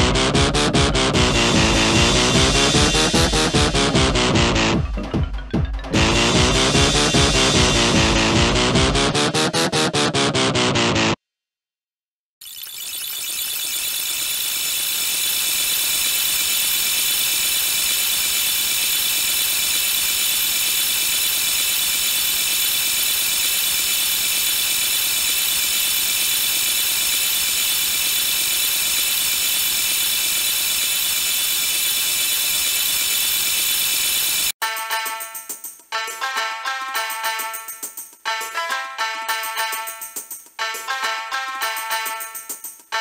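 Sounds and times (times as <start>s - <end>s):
alarm clock ringing: 12.4s - 34.6s.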